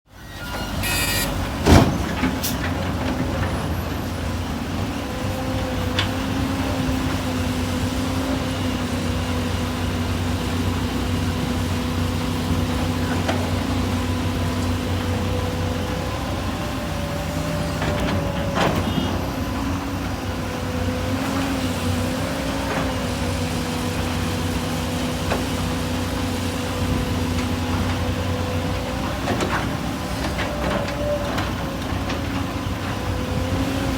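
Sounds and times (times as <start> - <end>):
hydraulic whine: 0.1 - 2.0
excavator and truck engines running: 0.1 - 33.9.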